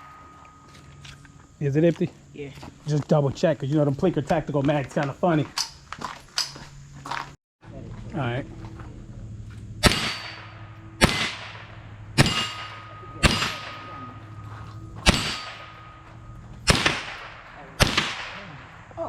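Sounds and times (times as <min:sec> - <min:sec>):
rifle shots with echo: 0:09.8 - 0:14.4, 0:15.0 - 0:19.0.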